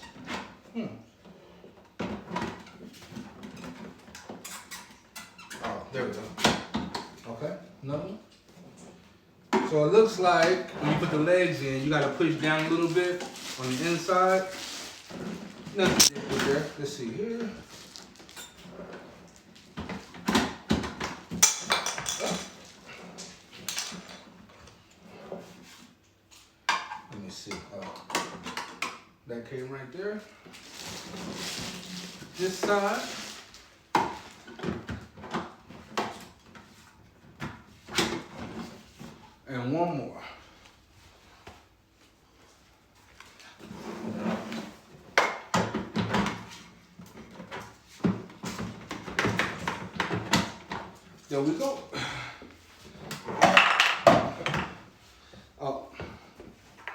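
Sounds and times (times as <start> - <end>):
parts clattering and knocking: 19.3 - 24.3, 53.0 - 54.9.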